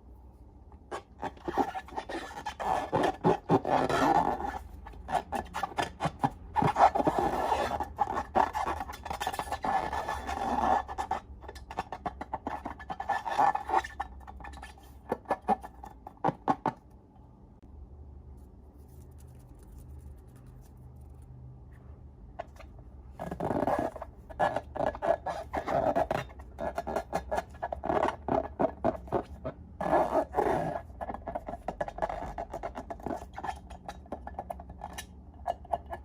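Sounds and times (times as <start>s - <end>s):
scraping rubbing noise: 0.9s - 16.4s, 22.5s - 33.4s.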